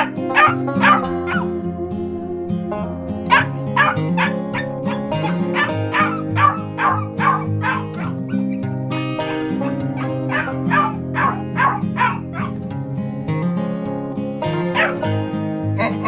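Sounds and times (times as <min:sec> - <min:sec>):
dog yapping: 0:00.0 - 0:01.4, 0:03.3 - 0:08.5, 0:09.6 - 0:12.6, 0:14.8 - 0:15.0
background music: 0:00.0 - 0:16.0.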